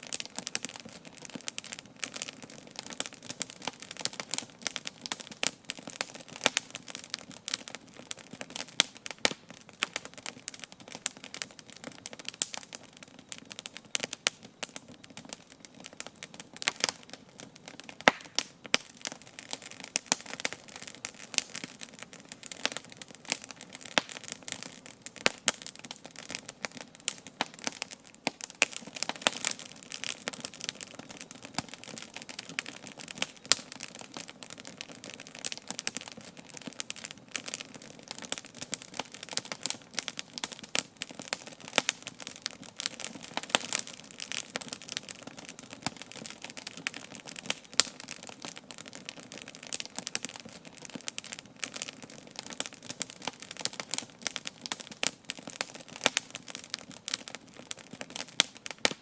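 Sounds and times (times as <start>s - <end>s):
campfire crackling and popping: 0.0s - 59.0s.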